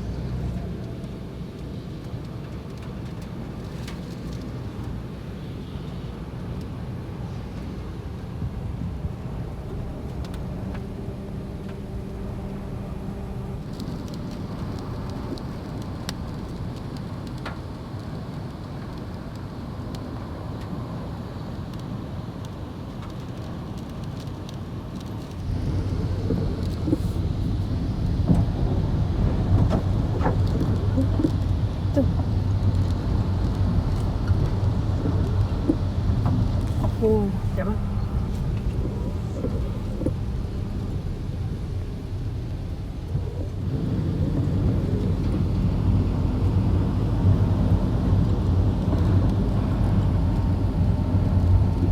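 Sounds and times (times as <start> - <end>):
wind buffeting microphone: 25.3 - 51.9.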